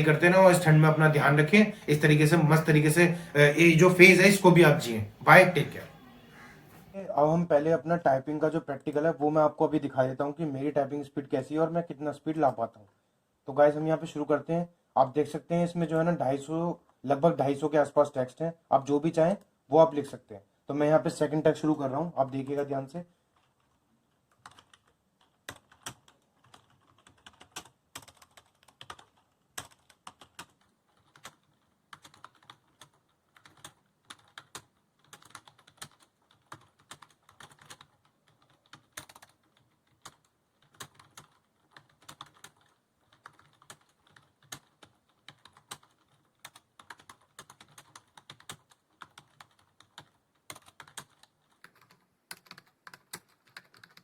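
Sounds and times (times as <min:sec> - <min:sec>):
fast typing on keyboard: 0:23.3 - 0:54.0.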